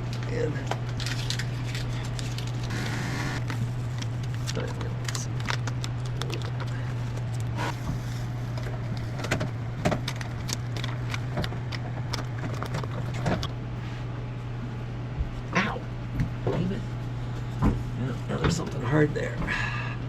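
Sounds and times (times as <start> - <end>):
steady low hum: 0.0 - 20.0
hands clicking tapping and rustling: 9.2 - 13.6.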